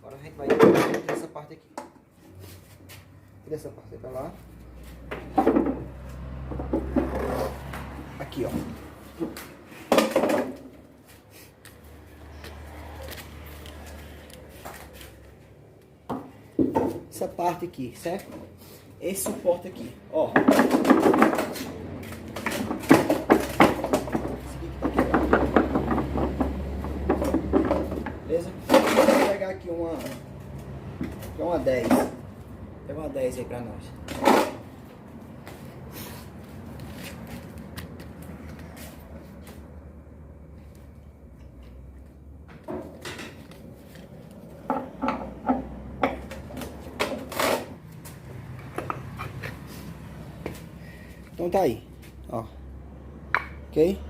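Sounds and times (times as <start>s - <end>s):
metal parts and wrench clanking: 27.1s - 30.3s.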